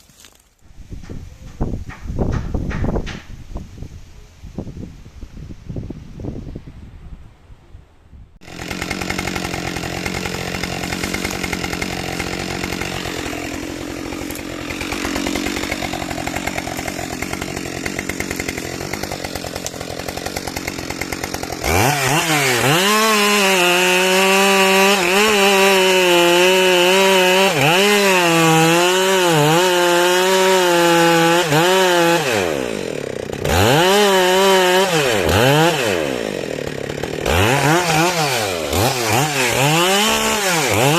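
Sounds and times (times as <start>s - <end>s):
small engine revving: 8.4s - 40.9s.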